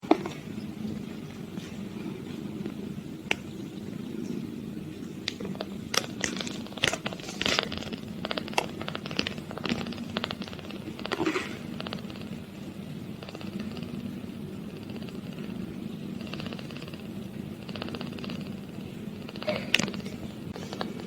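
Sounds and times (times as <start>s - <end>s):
kitten purring: 0.0s - 21.0s
scratchy clicks and crackles: 0.0s - 21.0s.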